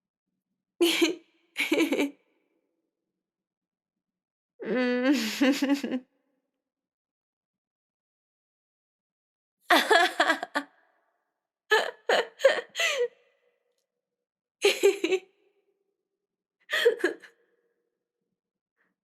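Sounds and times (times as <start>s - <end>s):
woman laughing: 0.8s - 2.1s, 4.7s - 6.0s, 9.7s - 10.6s, 11.7s - 13.1s, 14.6s - 15.2s, 16.7s - 17.3s.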